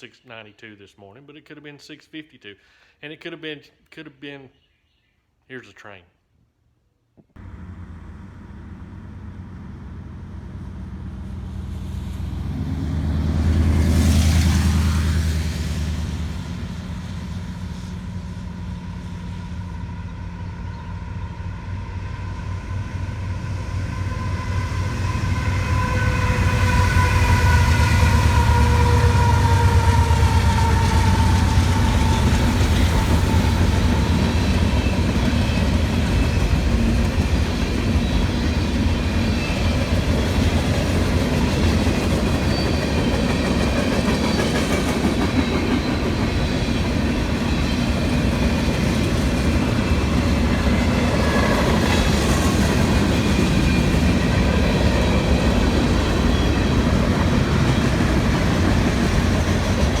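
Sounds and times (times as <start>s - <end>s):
freight train wheels rumbling on rails: 7.4s - 60.0s.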